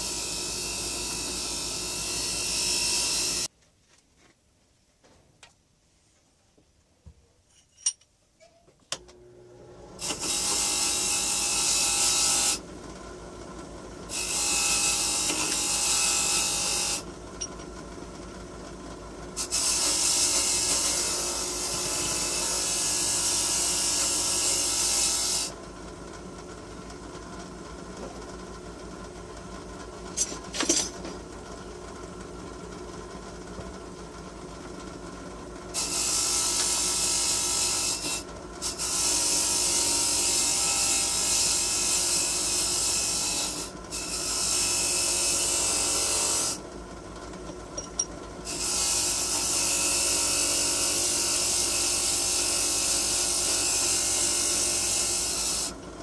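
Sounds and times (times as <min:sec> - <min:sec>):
power tool motor running: 0:00.0 - 0:03.5, 0:09.4 - 0:12.6, 0:14.1 - 0:17.5, 0:19.4 - 0:25.6, 0:35.8 - 0:46.6, 0:47.8 - 0:55.8.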